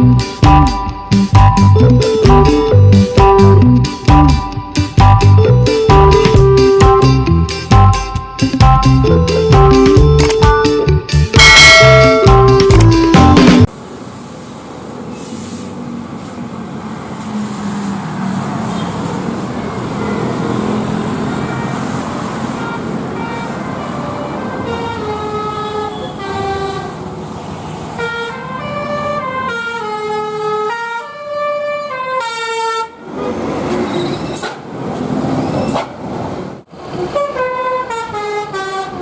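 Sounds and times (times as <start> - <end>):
musical bus horn melody: 0.0 - 13.7, 18.7 - 27.1, 28.0 - 33.0, 36.9 - 39.0
bus engine: 0.0 - 39.0
traffic rumble: 11.0 - 39.0.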